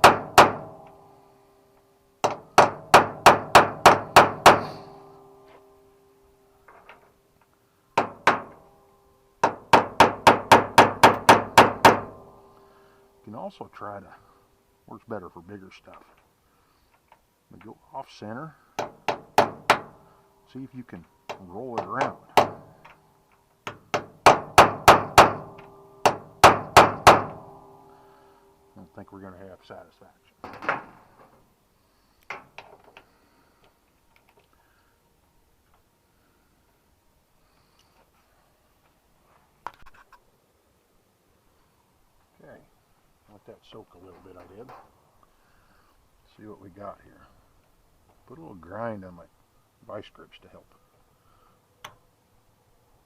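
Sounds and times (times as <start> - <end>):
metallic ring: 4.6 - 7.2, 25.4 - 26.4, 27.3 - 29.0
hammer tapping on metal: 9.4 - 12.3, 23.6 - 27.7.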